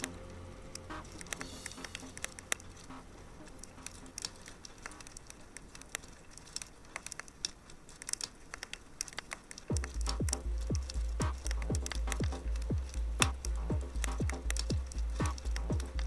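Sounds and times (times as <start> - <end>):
fireplace crackling: 0.0 - 16.0
electronic kick drum: 9.7 - 16.0.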